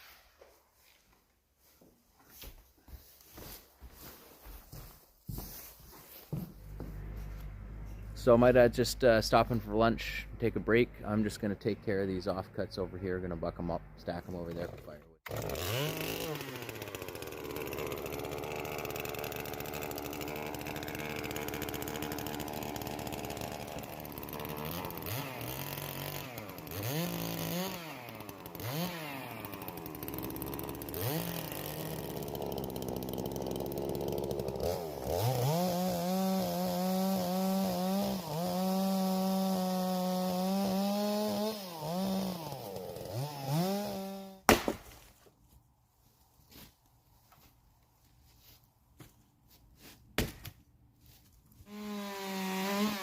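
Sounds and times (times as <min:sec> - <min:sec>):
chainsaw revving: 0:14.4 - 0:44.4, 0:51.6 - 0:53.0.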